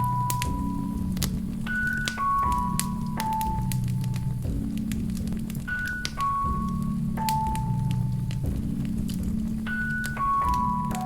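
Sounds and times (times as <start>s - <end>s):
burning logs crackling: 0.0s - 11.0s
soft background music: 0.0s - 11.0s.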